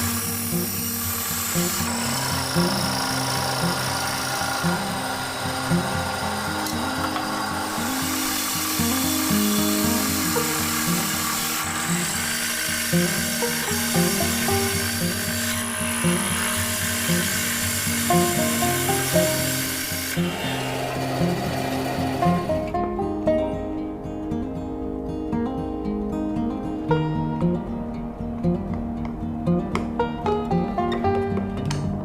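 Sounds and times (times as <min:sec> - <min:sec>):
woodworking power tools: 0:00.0 - 0:22.9
background music: 0:00.0 - 0:32.0.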